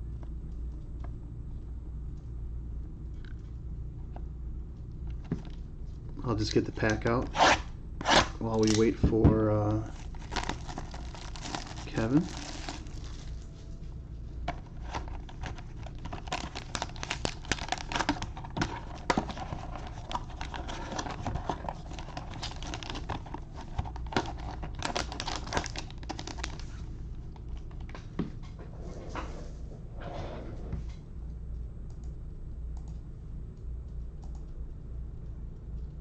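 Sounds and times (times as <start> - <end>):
packaging crinkling: 9.8 - 13.8, 14.4 - 27.9.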